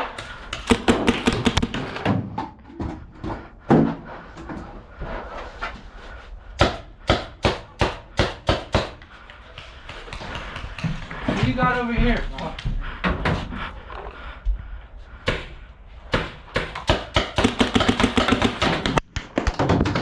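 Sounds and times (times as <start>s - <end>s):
paintball markers firing: 0.2s - 1.8s.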